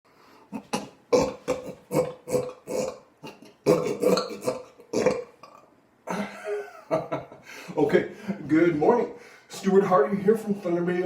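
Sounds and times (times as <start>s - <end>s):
person belching: 0.5s - 6.2s.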